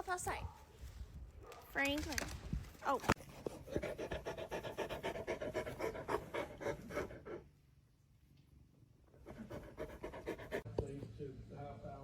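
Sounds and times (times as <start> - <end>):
dog panting quickly: 3.2 - 7.5, 9.2 - 10.7.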